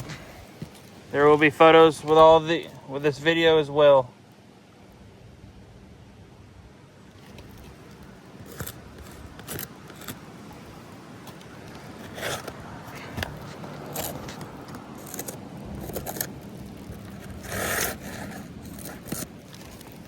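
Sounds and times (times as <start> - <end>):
low steady background noise: 0.0 - 20.0
short irregular scrapes: 7.1 - 20.0.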